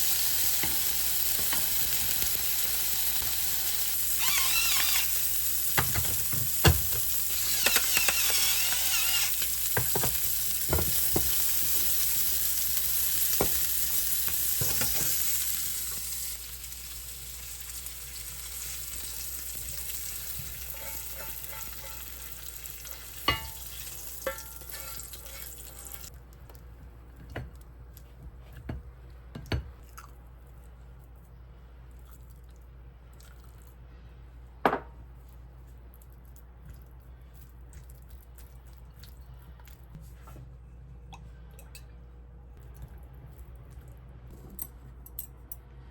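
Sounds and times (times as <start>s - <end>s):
food sizzling in frying pan: 0.0s - 26.1s
utensil tapping pan: 20.7s - 22.2s, 23.2s - 25.5s.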